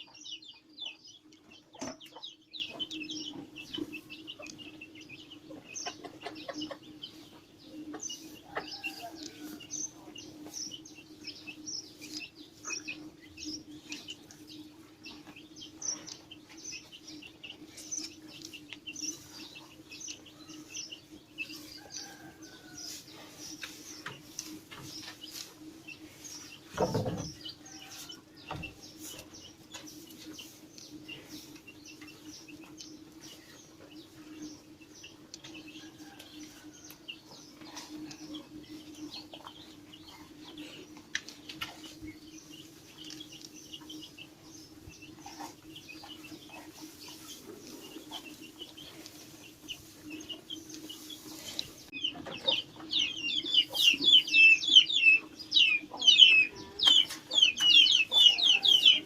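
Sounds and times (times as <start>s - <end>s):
birds chirping: 0.0s - 59.0s.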